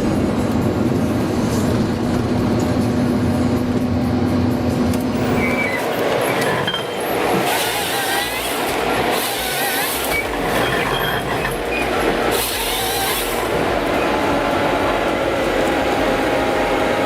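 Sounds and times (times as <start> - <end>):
heavy machinery running: 0.0 - 17.0
short high squeals: 5.3 - 13.5.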